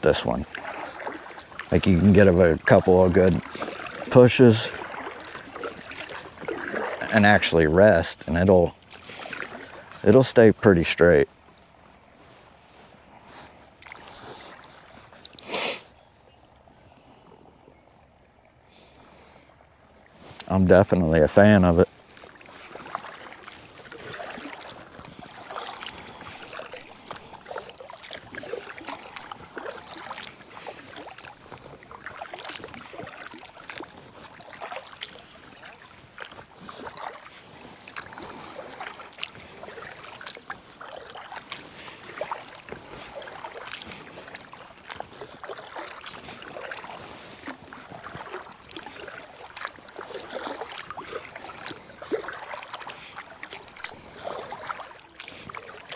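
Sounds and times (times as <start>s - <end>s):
water dripping and trickling: 0.0s - 10.4s, 22.1s - 55.9s
paddle splashing in water: 0.0s - 55.9s.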